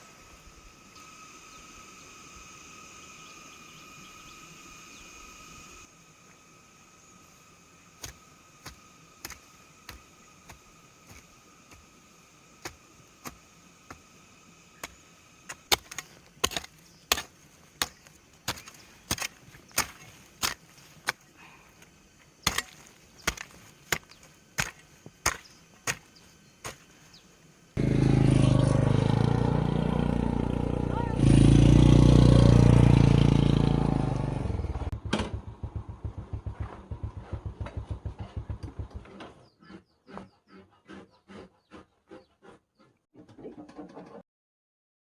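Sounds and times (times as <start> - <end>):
chopping strikes: 14.8 - 21.2, 22.4 - 26.9
loud steady low sound: 27.8 - 38.8.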